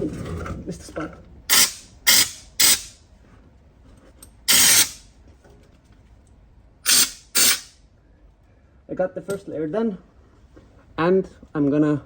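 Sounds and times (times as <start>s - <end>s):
spray hissing bursts: 1.5s - 2.9s, 4.5s - 5.0s, 6.9s - 7.7s.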